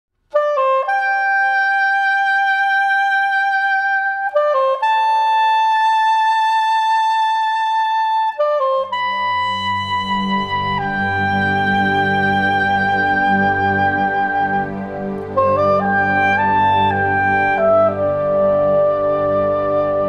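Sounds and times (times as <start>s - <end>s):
solo wind instrument melody: 0.3s - 20.0s
low musical accompaniment: 8.3s - 20.0s.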